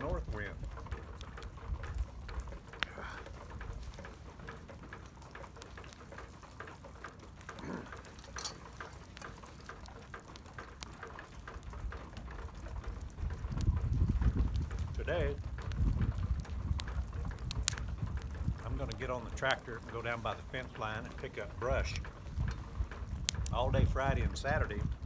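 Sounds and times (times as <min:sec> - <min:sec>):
wind rumble on microphone: 0:00.0 - 0:04.9, 0:11.2 - 0:25.0
campfire crackling and popping: 0:00.0 - 0:25.0.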